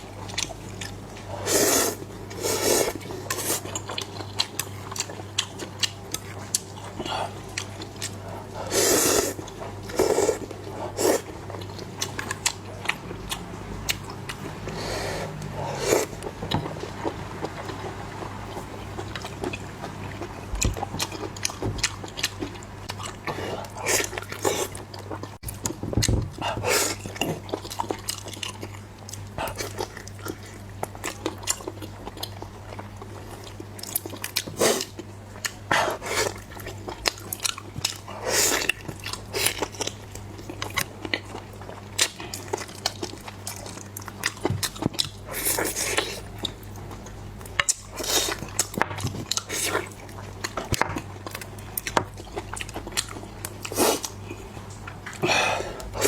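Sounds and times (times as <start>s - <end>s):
person chewing crunchy food: 0.0s - 56.0s
steady low hum: 0.0s - 56.0s.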